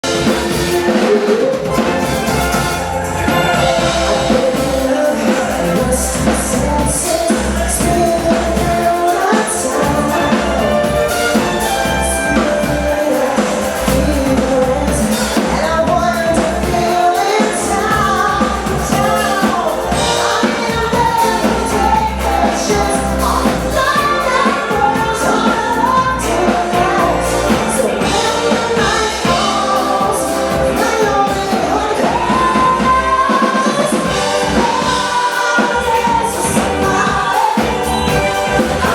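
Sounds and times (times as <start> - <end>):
loud band music with singing: 0.0 - 38.9
pulsing bass beat: 1.7 - 9.0.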